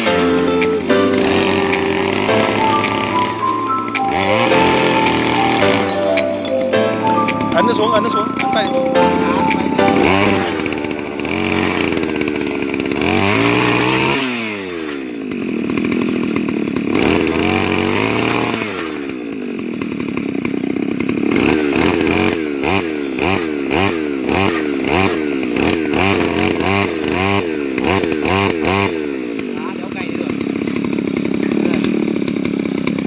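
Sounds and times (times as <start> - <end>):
earth auger engine revving: 1.1 - 2.3.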